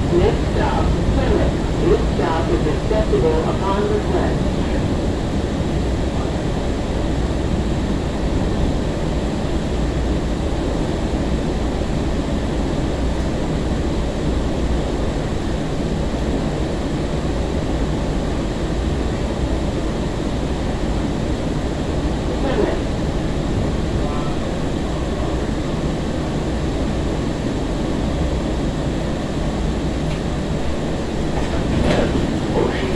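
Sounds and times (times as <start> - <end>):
train wheels rumbling on rails: 22.2 - 32.9.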